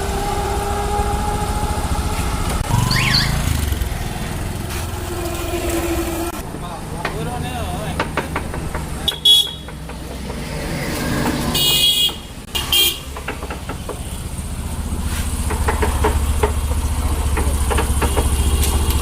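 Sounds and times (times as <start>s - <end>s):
motorcycle engine running: 0.0s - 10.2s, 13.0s - 19.0s
motorcycle horn toots: 1.8s - 3.6s, 9.0s - 9.8s, 11.5s - 13.2s, 17.8s - 19.0s.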